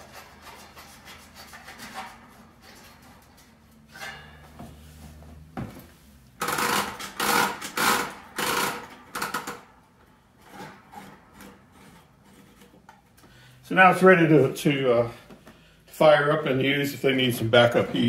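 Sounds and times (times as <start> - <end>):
metal scraping and rattling: 0.0 - 5.0, 10.3 - 13.1.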